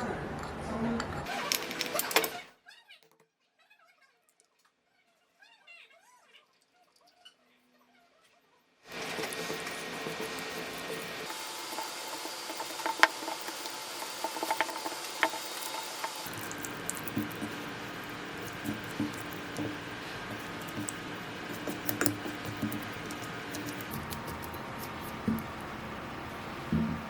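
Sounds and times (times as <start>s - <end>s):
utensils clicking and knocking: 1.2s - 3.3s, 8.9s - 26.0s.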